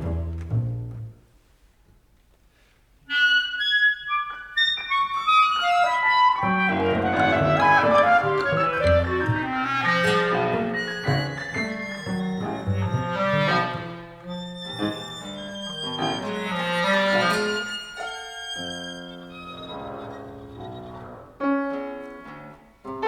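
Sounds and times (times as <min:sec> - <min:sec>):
chamber ensemble playing: 0:03.1 - 0:21.2.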